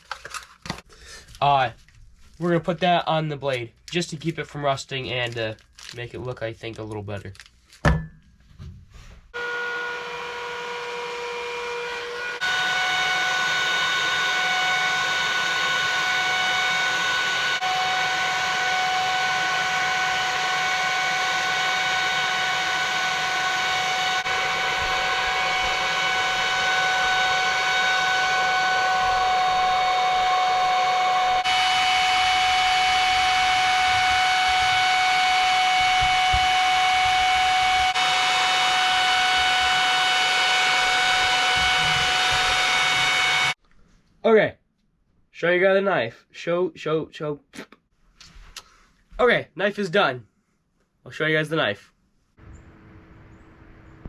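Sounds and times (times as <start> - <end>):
hair dryer running: 9.4 - 43.6.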